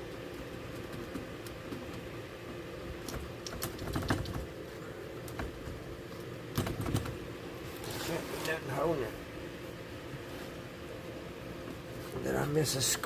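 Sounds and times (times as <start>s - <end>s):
clicks and knocks of radio chassis: 3.0s - 4.5s, 5.2s - 7.2s.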